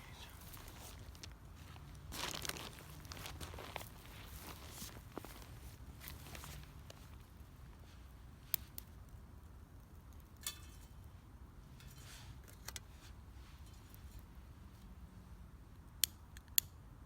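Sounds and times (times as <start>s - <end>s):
low steady rumble: 0.0s - 8.4s.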